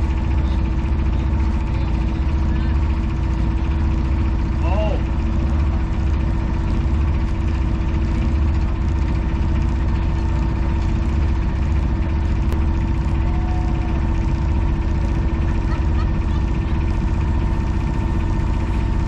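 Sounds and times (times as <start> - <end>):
boat engine throbbing: 0.0 - 19.0.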